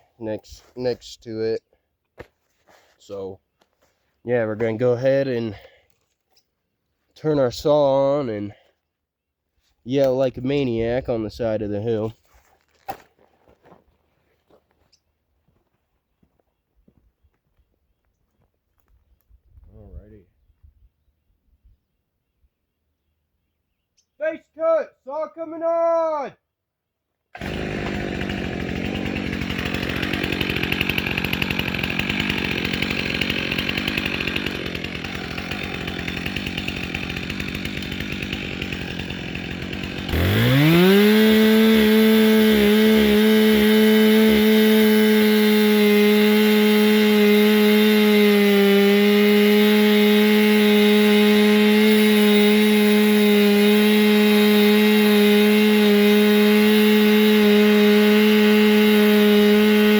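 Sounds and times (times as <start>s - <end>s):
chainsaw revving: 27.4s - 59.9s.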